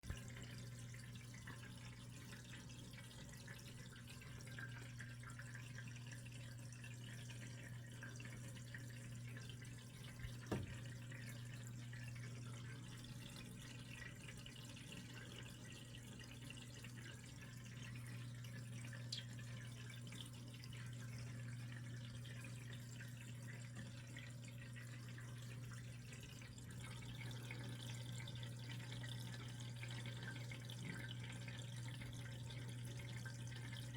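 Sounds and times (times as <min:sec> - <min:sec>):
aquarium water trickling: 0:00.0 - 0:33.9.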